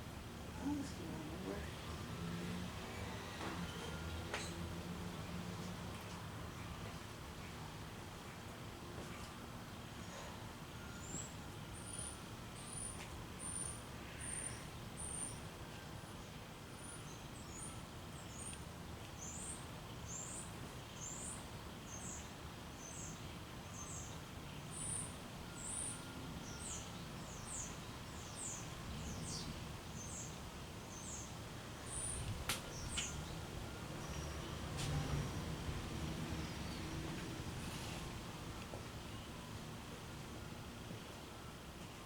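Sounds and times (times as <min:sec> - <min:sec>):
ceiling fan humming: 0:23.7 - 0:42.0.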